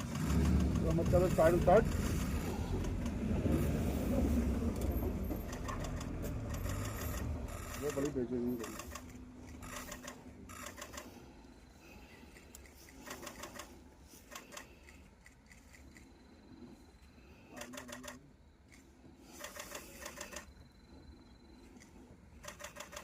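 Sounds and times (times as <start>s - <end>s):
camera shutters clicking: 5.5s - 11.1s.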